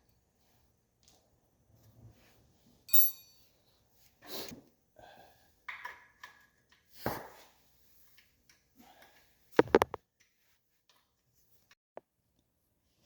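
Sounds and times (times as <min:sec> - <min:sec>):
metal tools clinking and knocking: 0:02.9 - 0:03.5.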